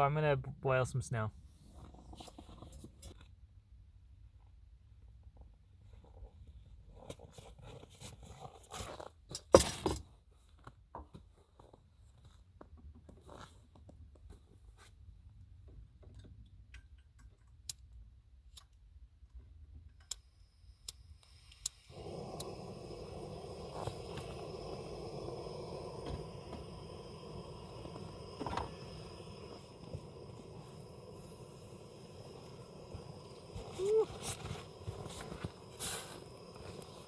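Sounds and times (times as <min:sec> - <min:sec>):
camp stove burner hissing: 0:20.1 - 0:37.0
snow crunching and scraping: 0:33.0 - 0:37.0.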